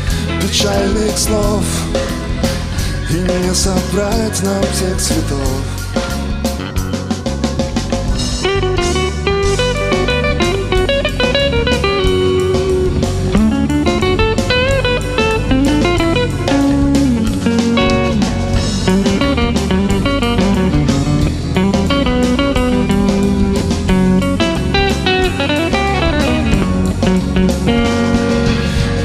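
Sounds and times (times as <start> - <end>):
bass guitar: 0.0 - 29.0
lead guitar melody with bent notes: 0.0 - 29.0
steady drum beat: 0.0 - 29.0.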